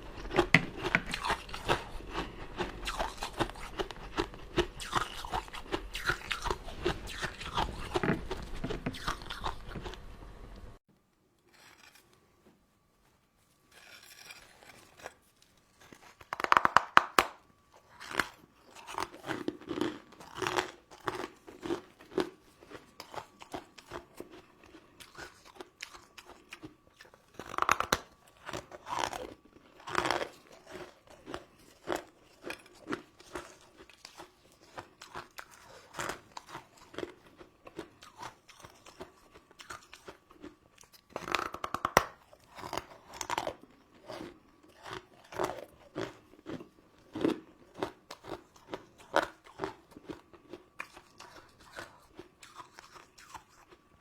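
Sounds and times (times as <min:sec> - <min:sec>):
wet chewing: 0:00.0 - 0:10.1, 0:14.8 - 0:53.9
chewing and crunching sweets: 0:00.0 - 0:10.6, 0:11.5 - 0:54.0.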